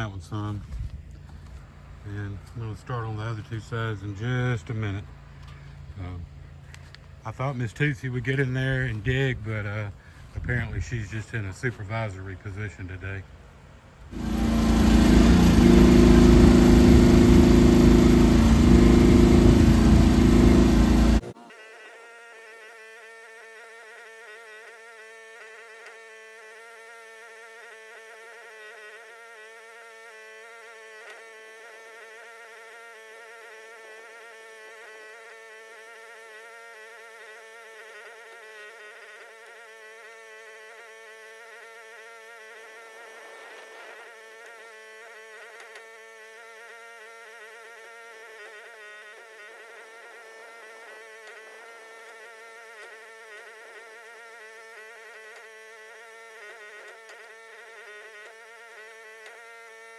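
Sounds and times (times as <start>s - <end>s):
excavator engine buzzing drone: 14.1s - 21.3s.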